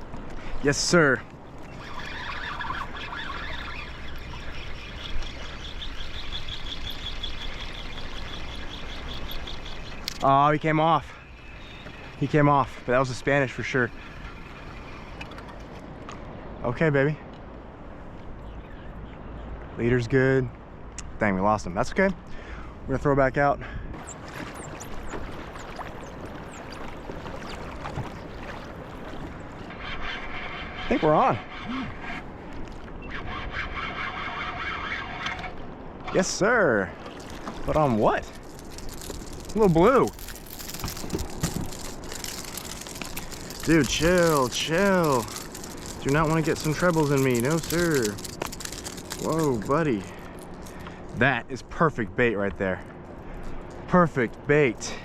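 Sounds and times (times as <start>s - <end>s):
water lapping along kayak hull: 0.0s - 16.6s, 23.7s - 51.2s, 52.8s - 53.9s
fishing reel ticking: 1.8s - 10.3s, 11.3s - 15.3s, 38.2s - 50.9s
small water splashes: 24.0s - 29.8s, 36.9s - 51.1s.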